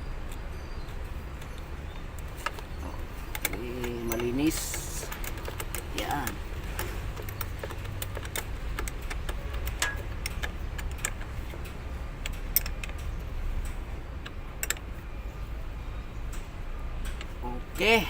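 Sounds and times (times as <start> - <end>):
hand tools clicking on metal: 3.3 - 14.9.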